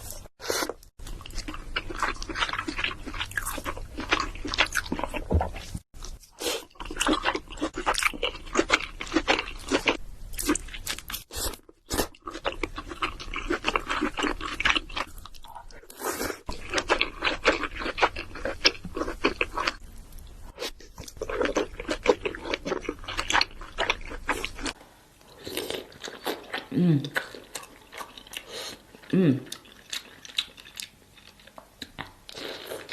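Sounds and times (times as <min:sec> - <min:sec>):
chewing: 0:25.5 - 0:32.9.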